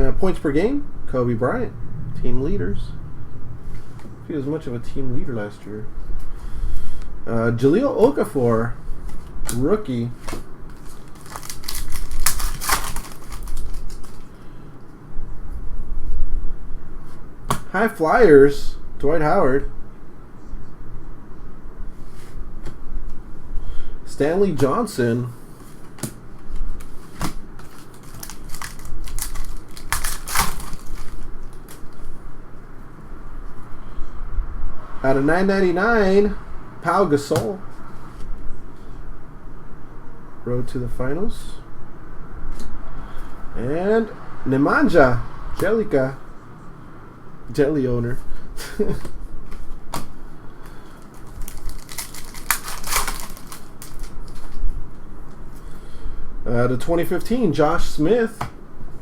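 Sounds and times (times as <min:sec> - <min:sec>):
trading cards flipped by hand: 0:10.2 - 0:14.3, 0:25.6 - 0:32.1, 0:49.0 - 0:54.6.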